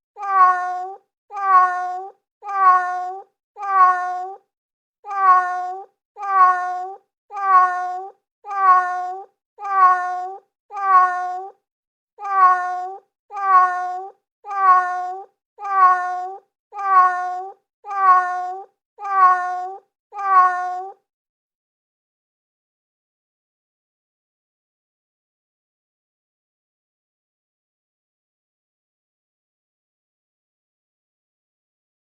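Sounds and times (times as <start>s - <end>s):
cat meowing: 0.2s - 4.4s, 5.1s - 11.6s, 12.2s - 21.0s.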